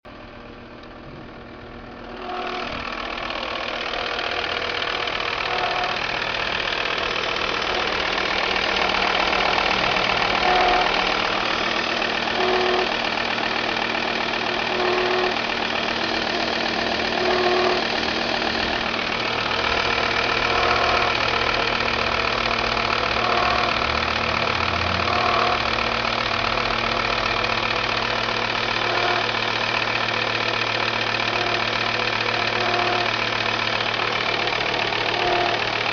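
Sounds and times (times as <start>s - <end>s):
diesel engine running: 0.1s - 35.9s
short pitched tone: 2.1s - 13.0s, 14.6s - 15.5s, 17.0s - 21.4s, 23.2s - 23.8s, 25.0s - 25.6s.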